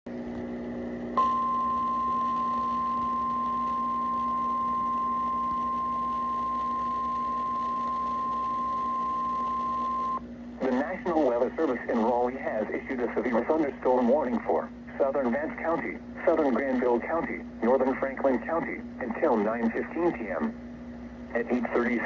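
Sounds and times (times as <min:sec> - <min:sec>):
faint low hum: 0:00.3 - 0:22.0
emergency alert tone: 0:01.2 - 0:10.2.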